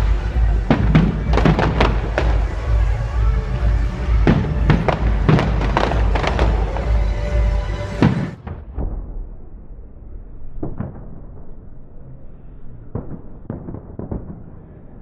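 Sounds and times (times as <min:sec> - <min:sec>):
fireworks bangs: 0:00.0 - 0:09.7, 0:12.9 - 0:15.0
deep rumble: 0:00.0 - 0:15.0.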